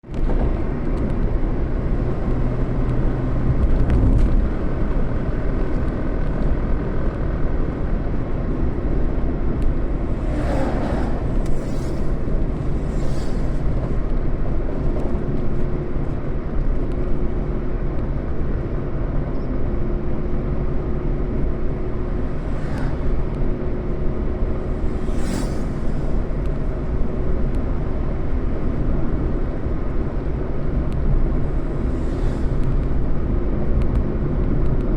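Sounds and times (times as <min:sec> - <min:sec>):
vehicle engine and road rumble: 0:00.0 - 0:34.9
passing traffic hiss: 0:09.8 - 0:14.5, 0:21.8 - 0:27.3, 0:31.3 - 0:33.5.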